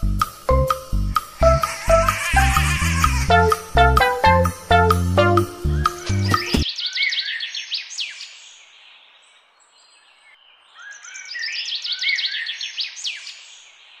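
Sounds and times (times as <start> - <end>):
faint outdoor hiss: 0.0 - 6.6
songbird chirping: 0.0 - 14.0.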